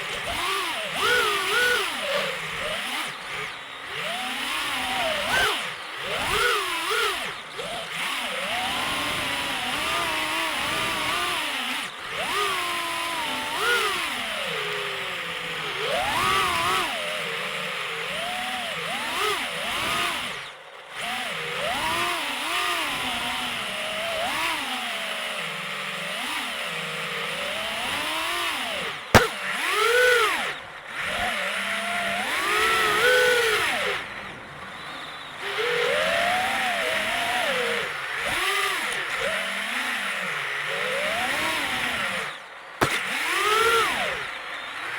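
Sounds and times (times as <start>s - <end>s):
drone propellers buzzing: 0.0s - 10.2s, 28.7s - 30.8s, 42.8s - 44.6s
sharp click: 29.2s - 29.5s, 42.8s - 43.2s.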